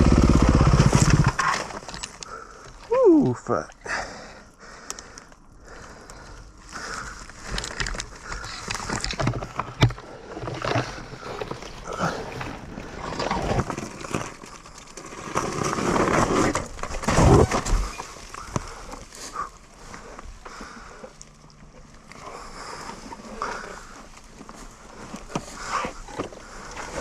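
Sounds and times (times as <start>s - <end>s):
dirt bike engine revving: 0.0s - 1.4s.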